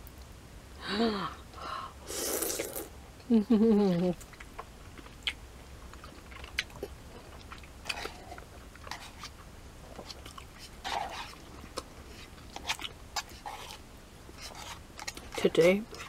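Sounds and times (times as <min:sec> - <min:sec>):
noodle slurp: 0:02.1 - 0:02.9
wet chewing and smacking: 0:04.2 - 0:16.0.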